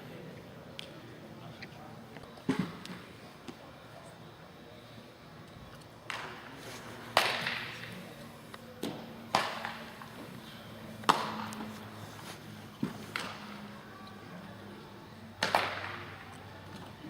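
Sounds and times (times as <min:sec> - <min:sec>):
baseball smacks echoing: 0:06.1 - 0:08.0, 0:11.0 - 0:11.6, 0:15.4 - 0:16.1.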